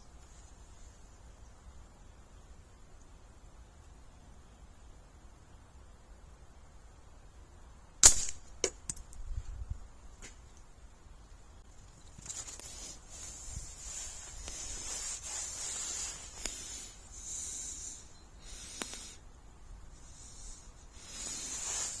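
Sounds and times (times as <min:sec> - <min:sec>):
high-pitched hiss: 0:11.6 - 0:22.0
faint clicks: 0:18.6 - 0:19.2.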